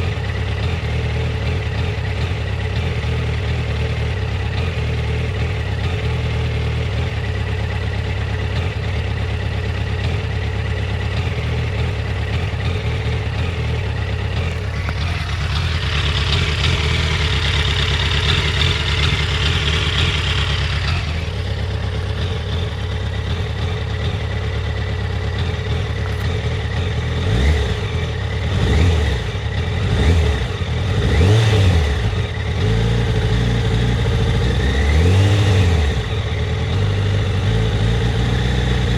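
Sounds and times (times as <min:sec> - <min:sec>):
motorcycle engine idling roughly: 0:00.0 - 0:38.9.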